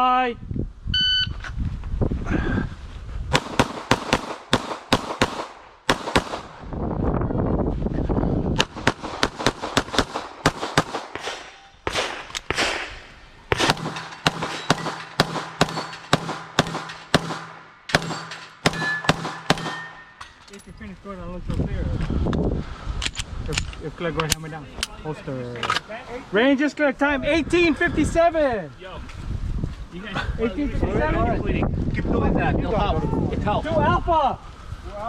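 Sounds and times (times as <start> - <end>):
pistol shots: 3.3 - 6.6, 8.6 - 20.1.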